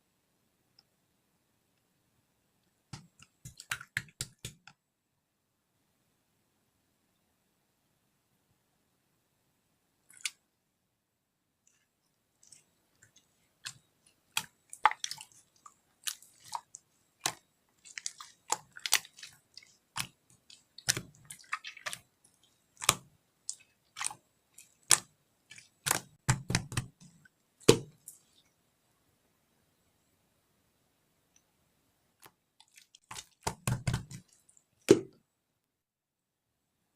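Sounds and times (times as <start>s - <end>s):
slime squelches: 2.7s - 4.9s, 10.0s - 10.6s, 11.6s - 28.7s, 32.1s - 35.3s.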